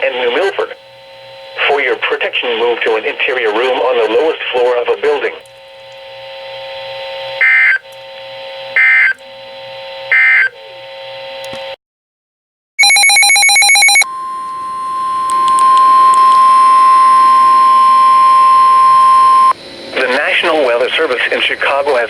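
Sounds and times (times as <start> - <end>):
radio hiss: 0.0 - 8.9, 19.6 - 22.0
steady warning alarm tone: 6.8 - 7.9, 8.7 - 9.2, 10.1 - 10.6, 12.8 - 20.9.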